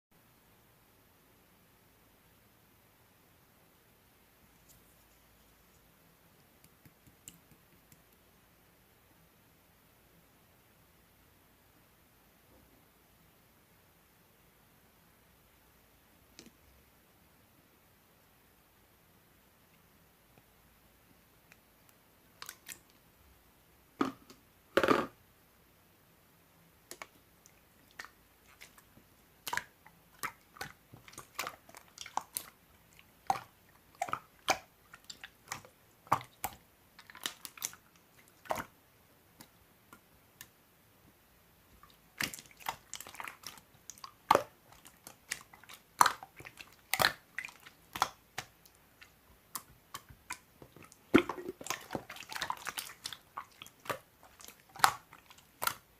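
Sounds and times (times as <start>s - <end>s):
slime squishing by hand: 21.4s - 23.1s, 26.8s - 40.6s, 41.7s - 55.9s.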